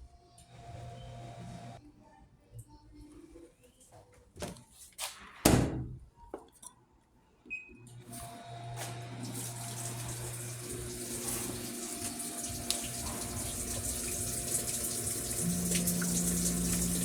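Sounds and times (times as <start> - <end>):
electrical hum: 8.4 - 17.0
water rushing in washing machine: 8.4 - 17.0
higher hum: 13.0 - 17.0.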